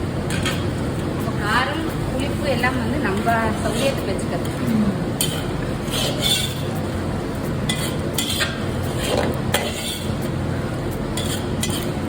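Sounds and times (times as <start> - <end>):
metal ladle clinking and scraping: 5.2 - 6.6, 7.7 - 10.1, 11.2 - 11.9.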